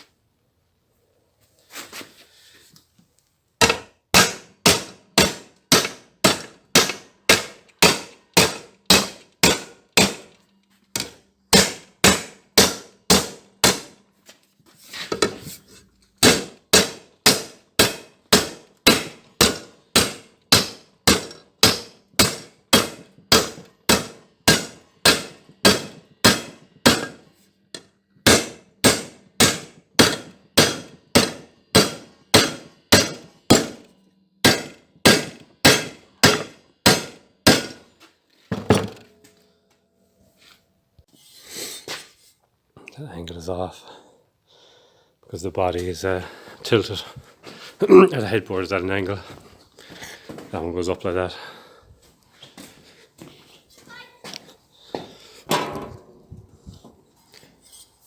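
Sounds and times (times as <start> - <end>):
hammer striking steel: 3.6 - 14.0, 16.2 - 39.6, 55.4 - 56.4.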